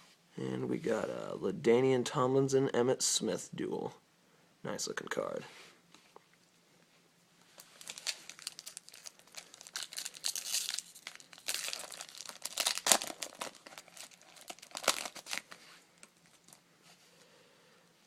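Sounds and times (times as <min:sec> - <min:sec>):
foil wrapper crinkling: 0:07.6 - 0:16.6.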